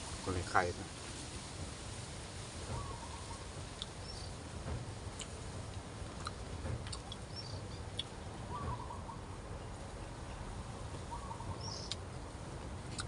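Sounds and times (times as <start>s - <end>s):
wind rumbling on microphone: 0.0s - 13.0s
bird chirps: 2.8s - 3.4s, 4.0s - 4.4s, 7.2s - 9.8s, 10.8s - 12.0s.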